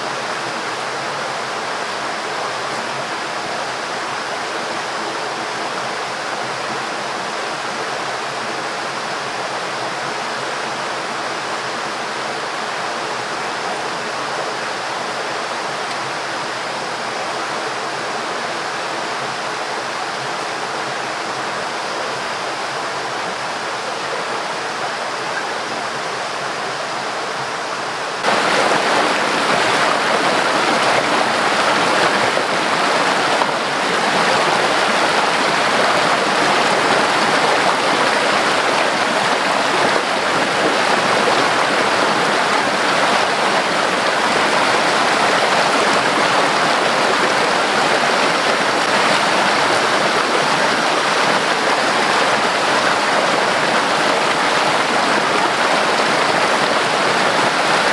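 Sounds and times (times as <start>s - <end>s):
water rushing: 23.2s - 57.9s.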